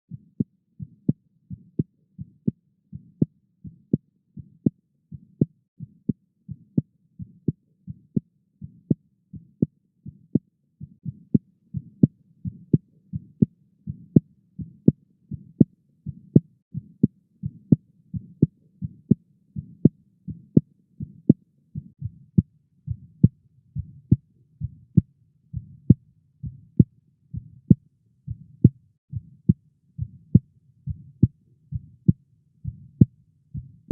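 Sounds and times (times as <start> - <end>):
low tapping heartbeats: 6.5 - 33.9.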